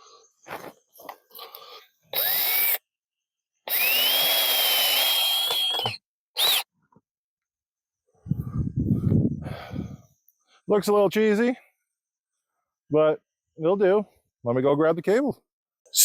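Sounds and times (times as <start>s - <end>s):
power drill driving screw: 2.2s - 2.8s, 3.7s - 6.7s.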